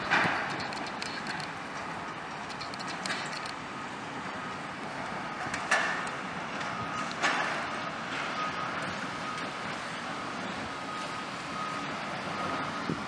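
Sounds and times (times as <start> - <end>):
machine and site noise: 0.0 - 13.0
backup alarm beeping: 6.6 - 13.0.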